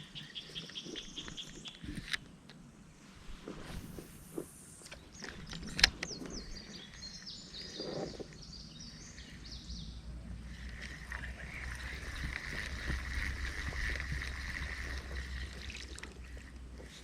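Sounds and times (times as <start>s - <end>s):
songbird singing: 0.0s - 2.2s, 4.4s - 17.0s
constant low rumble: 0.0s - 17.0s
steady hiss: 2.7s - 8.1s.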